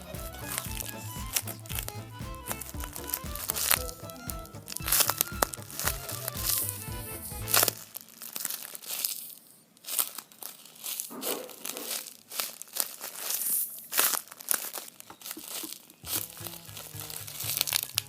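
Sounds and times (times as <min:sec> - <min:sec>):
background music with low beat: 0:00.0 - 0:07.8
craft material crinkling and crackling: 0:07.5 - 0:18.0.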